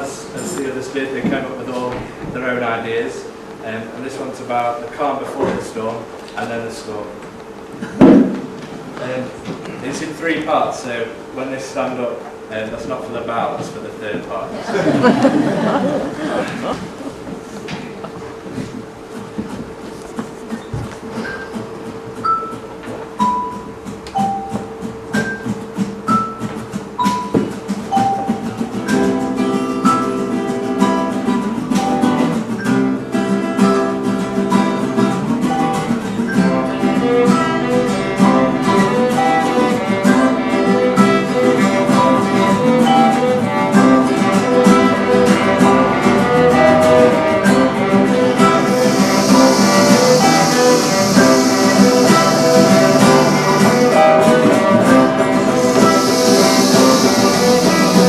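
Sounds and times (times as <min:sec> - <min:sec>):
loud steady hiss: 0:00.0 - 0:22.2, 0:27.6 - 0:58.0
school group instrumental music: 0:14.7 - 0:58.0.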